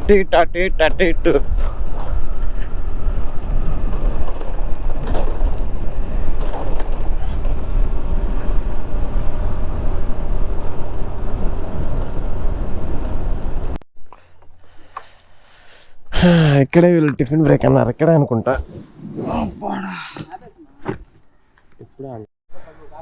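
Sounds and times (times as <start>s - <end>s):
road noise: 0.0s - 13.8s, 17.4s - 21.8s
wind over microphone: 1.2s - 13.8s, 18.4s - 20.3s.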